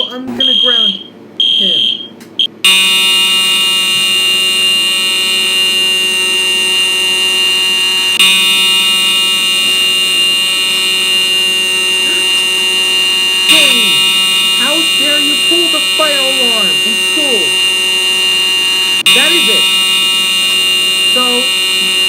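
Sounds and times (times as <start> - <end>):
electronic fire alarm tone: 0.0 - 22.0
short high beep: 11.9 - 19.8.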